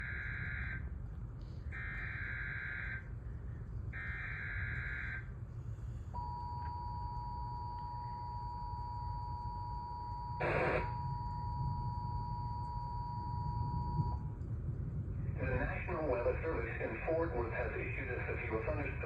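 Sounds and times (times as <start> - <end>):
low rumble: 0.0 - 19.0
two-tone attention signal buzz: 10.0 - 14.2.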